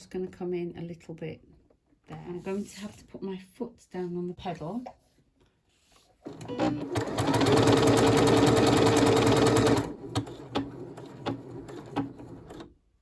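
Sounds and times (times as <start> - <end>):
sewing machine stitching: 6.2 - 12.7.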